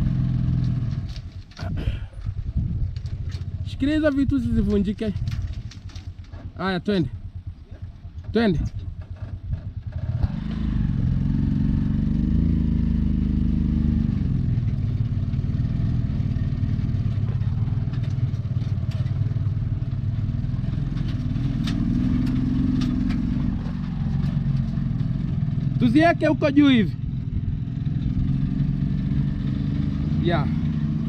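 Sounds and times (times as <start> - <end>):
auto-rickshaw engine running: 0.0 - 31.0
light rattles: 0.5 - 10.1.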